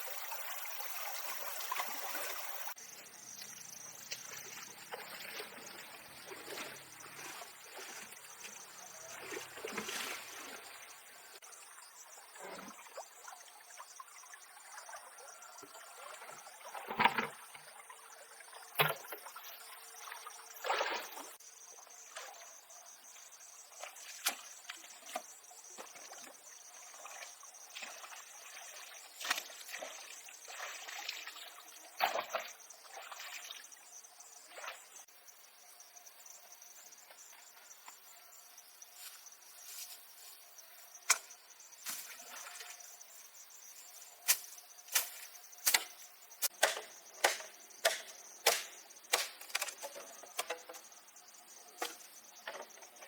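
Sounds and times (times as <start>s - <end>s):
crickets chirping: 0.0s - 53.0s
hand tool knocks and scrapes: 45.0s - 50.9s.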